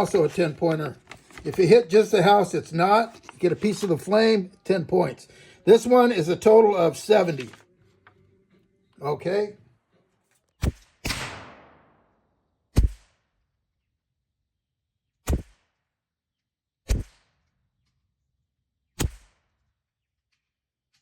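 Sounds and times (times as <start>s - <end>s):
rifle shots: 10.7s - 12.1s.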